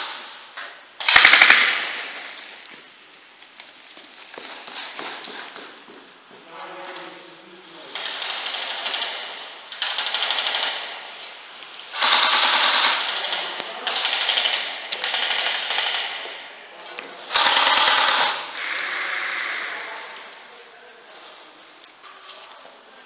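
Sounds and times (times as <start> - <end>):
airsoft guns firing bursts: 1.0 - 2.4, 7.9 - 11.1, 11.9 - 16.4, 17.3 - 18.6.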